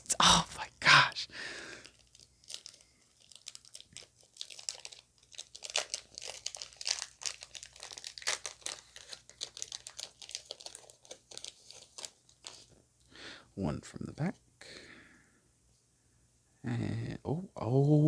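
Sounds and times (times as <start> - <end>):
foil wrapper crinkling and tearing: 1.8 - 12.8.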